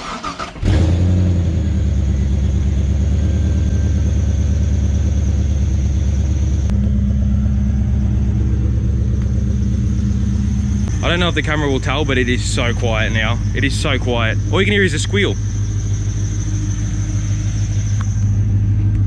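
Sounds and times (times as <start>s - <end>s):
engine cranking and idling: 0.0s - 19.0s
high pulley squeal: 8.9s - 18.6s.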